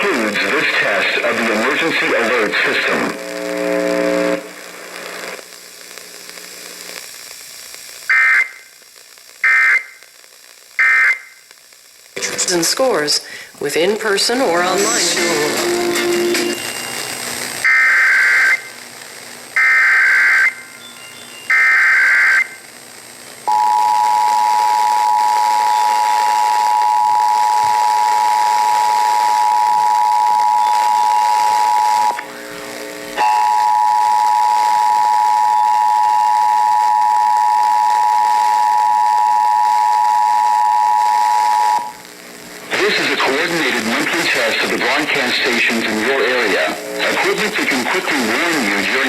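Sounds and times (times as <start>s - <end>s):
digital data bursts: 14.2s - 18.8s, 42.8s - 49.0s
two-tone attention signal: 14.8s - 17.1s.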